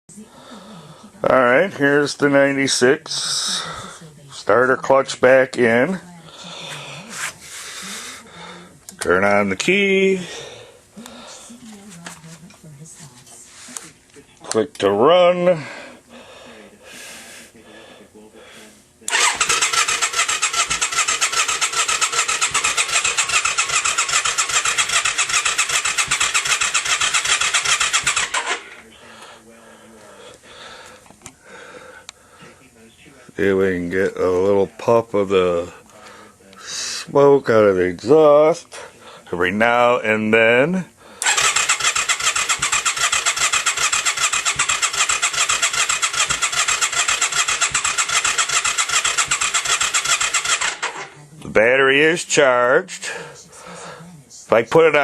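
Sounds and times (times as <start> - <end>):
engine cranking with starter: 19.1 - 28.9, 41.2 - 51.2.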